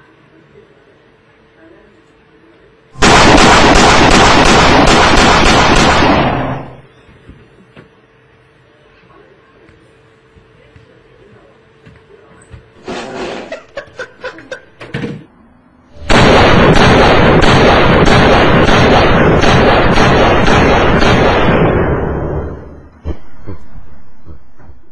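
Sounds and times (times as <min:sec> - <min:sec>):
sharp gunshots: 0:03.0 - 0:06.8, 0:16.0 - 0:23.2
dense gunfire noise: 0:03.0 - 0:06.9, 0:16.0 - 0:22.8.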